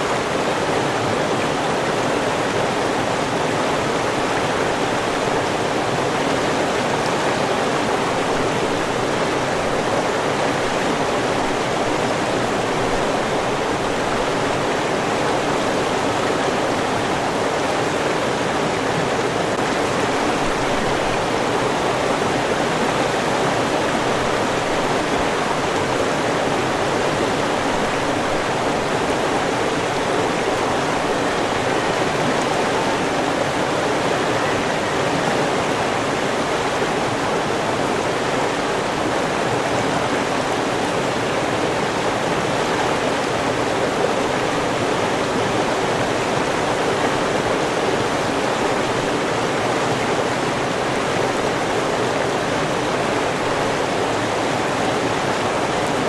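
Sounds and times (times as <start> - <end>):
river water rushing: 0.0 - 56.0.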